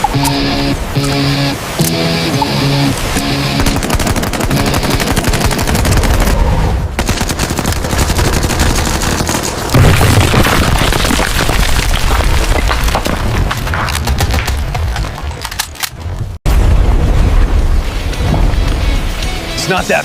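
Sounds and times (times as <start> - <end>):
background music: 0.0 - 3.8
rapid machine-gun fire: 3.6 - 6.4, 7.0 - 9.7.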